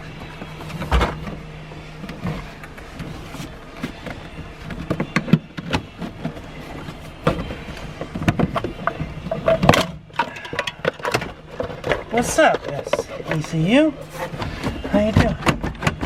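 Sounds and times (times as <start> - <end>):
low hum: 0.0 - 16.0
hand tools clicking and rattling: 3.8 - 16.0.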